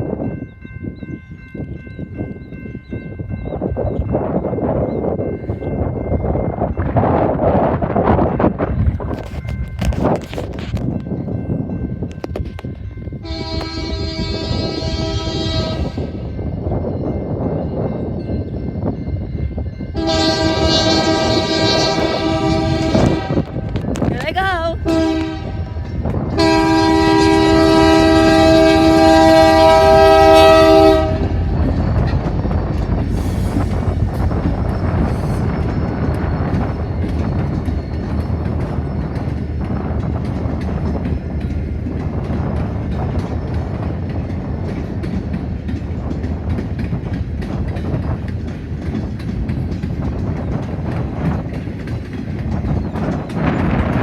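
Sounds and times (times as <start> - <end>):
railroad cars rumbling past: 0.0 - 54.0
train horn blast: 13.2 - 16.2, 20.0 - 23.7, 24.8 - 25.8, 26.4 - 31.5.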